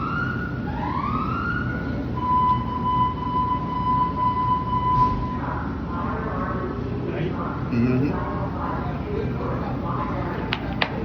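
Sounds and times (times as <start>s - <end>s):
electronic siren: 0.0s - 5.6s.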